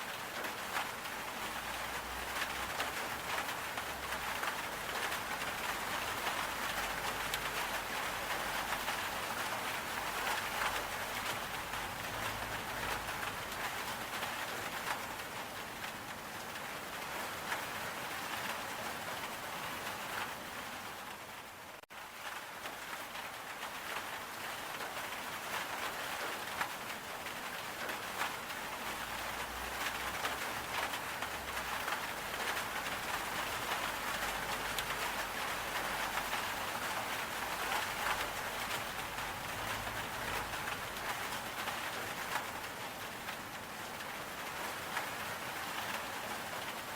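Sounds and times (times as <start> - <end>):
steady rain falling: 0.0 - 46.9.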